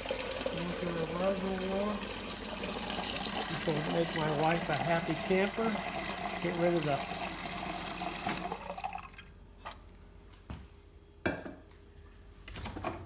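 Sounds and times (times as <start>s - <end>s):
water flowing into container: 0.0s - 9.3s.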